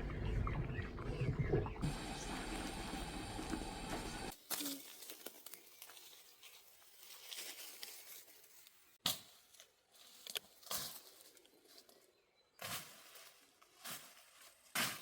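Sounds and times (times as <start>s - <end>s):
rustling and crinkling handling: 4.3s - 12.0s.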